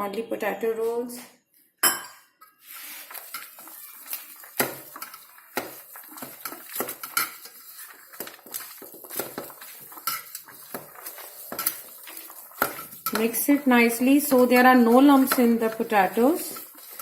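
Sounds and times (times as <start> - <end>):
spoon scraping mixing bowl: 2.6 - 17.0.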